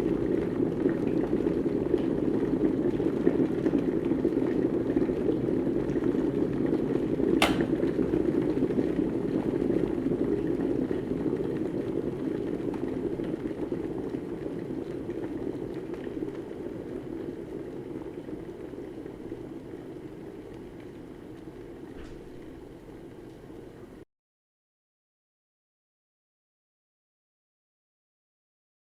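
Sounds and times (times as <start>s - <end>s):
electric kettle boiling: 0.0s - 24.0s
kettle switch click: 7.4s - 7.8s.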